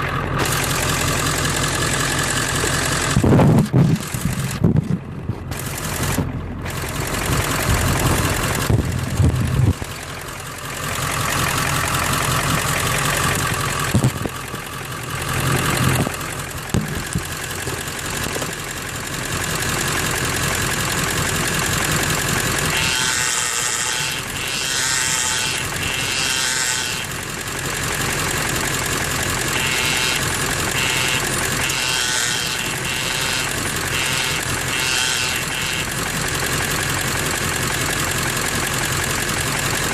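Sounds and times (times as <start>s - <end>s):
truck engine running: 0.0s - 39.9s
short high-pitched squeaks: 22.7s - 27.1s, 29.6s - 36.0s.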